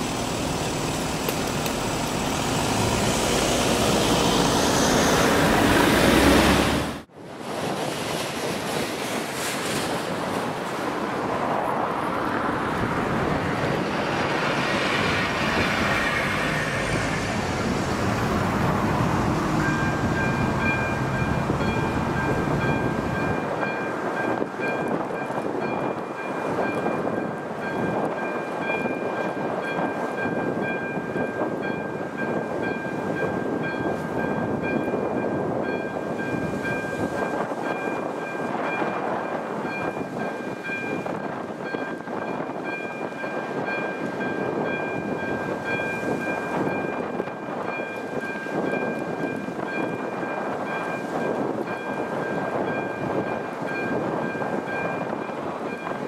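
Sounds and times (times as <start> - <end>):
train passing: 0.0 - 56.0
crossing warning signal ringing: 19.6 - 39.0.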